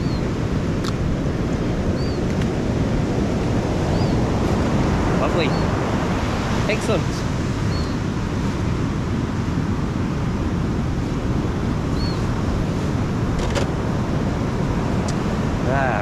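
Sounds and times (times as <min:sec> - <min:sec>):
surf breaking on beach: 0:00.0 - 0:16.0
wind on microphone: 0:00.0 - 0:16.0.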